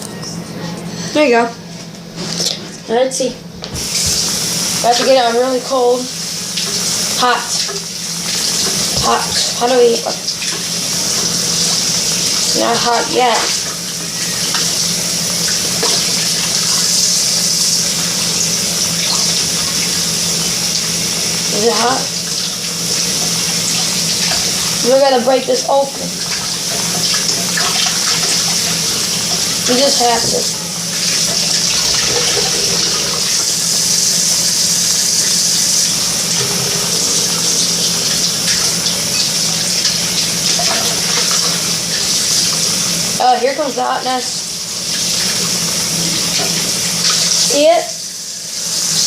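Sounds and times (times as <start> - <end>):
water tap running: 2.3 - 49.0.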